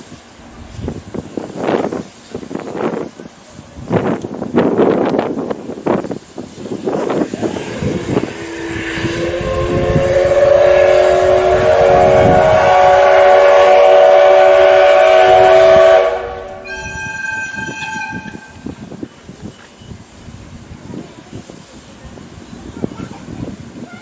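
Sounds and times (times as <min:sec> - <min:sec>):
diesel train horn: 0:08.0 - 0:18.7
short higher horn tone: 0:08.5 - 0:18.7.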